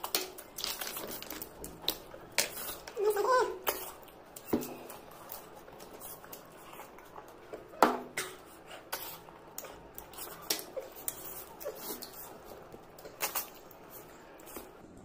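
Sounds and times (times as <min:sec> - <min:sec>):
wet mouth clicks and squishes: 0:03.6 - 0:14.8.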